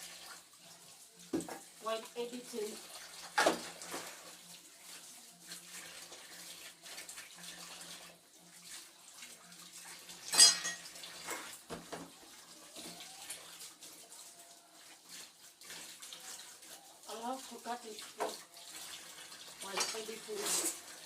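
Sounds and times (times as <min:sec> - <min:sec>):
tap water running into sink: 0:00.0 - 0:21.0
water splashing: 0:01.3 - 0:21.0
loud clatter of dishes: 0:03.3 - 0:04.1, 0:10.3 - 0:12.1.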